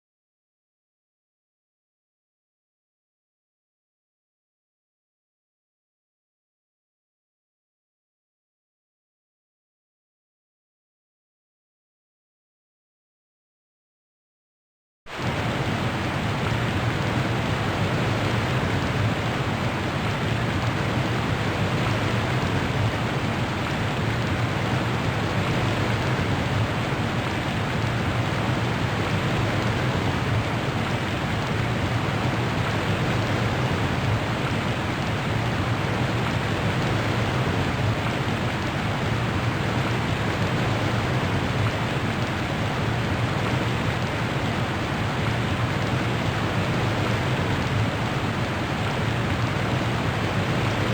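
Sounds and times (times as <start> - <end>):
steady rushing noise: 15.1 - 50.9.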